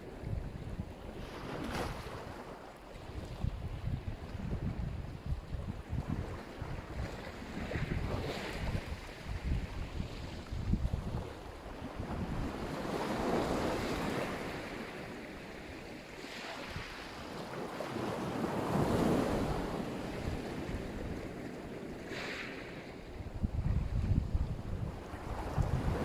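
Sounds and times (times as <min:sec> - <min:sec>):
wind buffeting microphone: 0:03.0 - 0:14.9, 0:23.0 - 0:26.0
waves washing in: 0:12.0 - 0:26.0.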